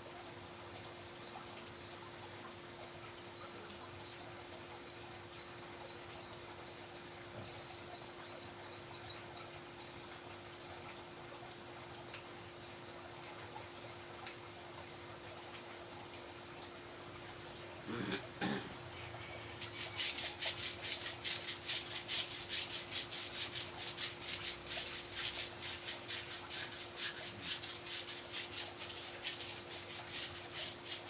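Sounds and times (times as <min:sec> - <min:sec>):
faint steady hum: 0:00.0 - 0:31.0
hands rubbing skin: 0:20.1 - 0:31.0.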